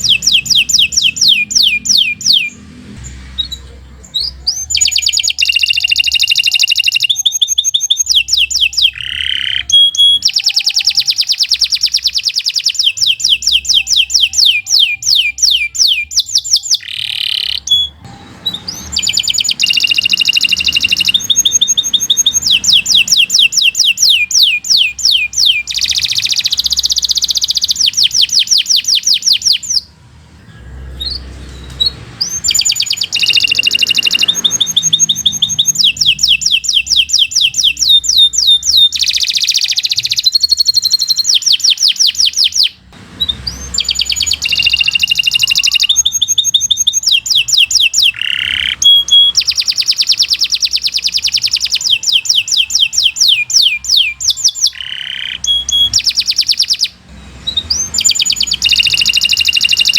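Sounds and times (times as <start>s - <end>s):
canary singing rapid trills: 0.0s - 59.9s.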